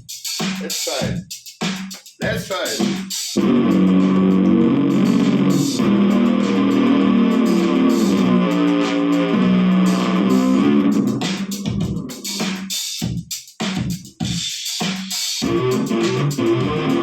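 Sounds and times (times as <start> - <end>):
electric bass guitar riff: 3.4 - 12.2, 15.4 - 17.0.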